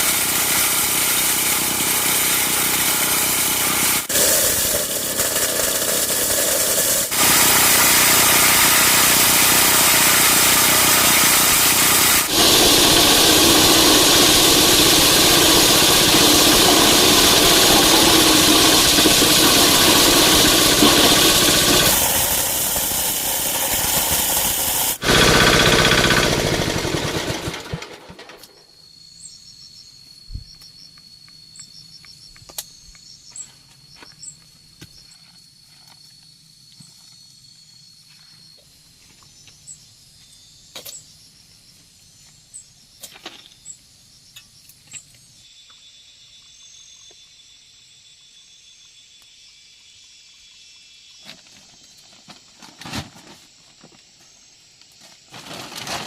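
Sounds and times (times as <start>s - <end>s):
motor engine running loudly: 0.0s - 28.2s
high insect trill: 28.6s - 56.0s.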